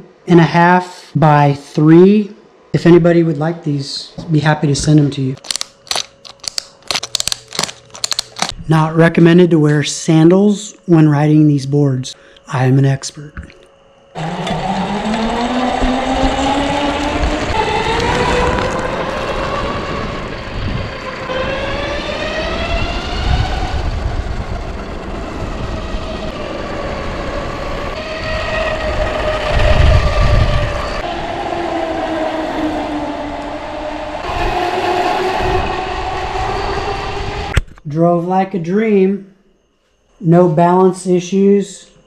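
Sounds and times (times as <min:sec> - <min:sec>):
electric skateboard drive whining: 0:14.1 - 0:37.6
road rumble: 0:14.2 - 0:37.6
wind on microphone: 0:14.5 - 0:37.8.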